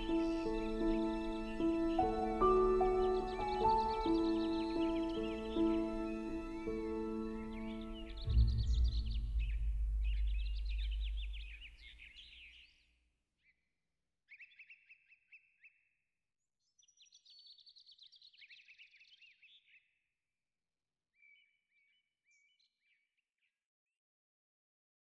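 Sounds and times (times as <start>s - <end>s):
songbirds chirping: 0.0s - 12.9s
low rumble: 6.5s - 12.4s.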